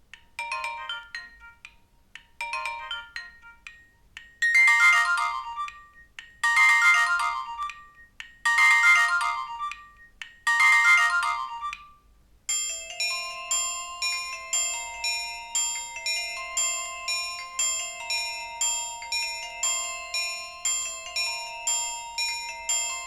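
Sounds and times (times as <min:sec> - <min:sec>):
xylophone-like alarm tone: 0:04.5 - 0:11.9.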